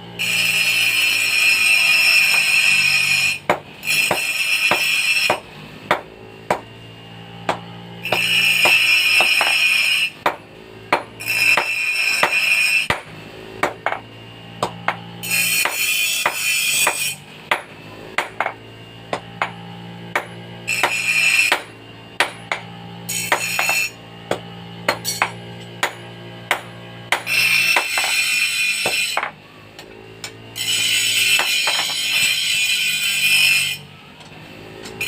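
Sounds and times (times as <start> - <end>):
steady low hum: 5.3 - 30.6
hammer ringing on anvil: 20.2 - 28.2.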